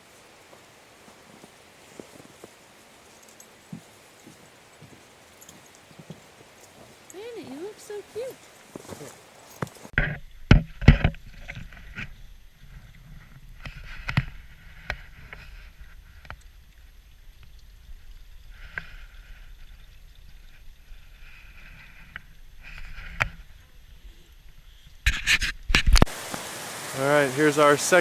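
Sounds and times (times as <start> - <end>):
footsteps on forest trail: 0.0 - 10.0.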